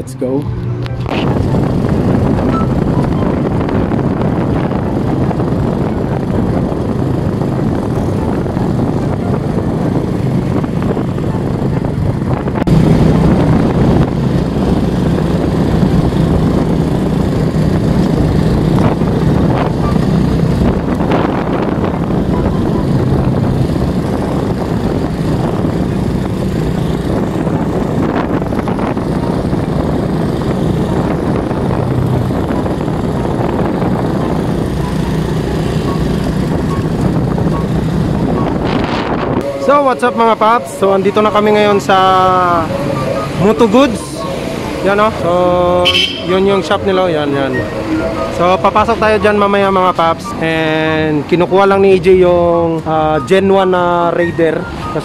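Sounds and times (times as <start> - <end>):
wind noise on microphone: 0.0 - 55.0
motorcycle engine running: 0.4 - 51.3.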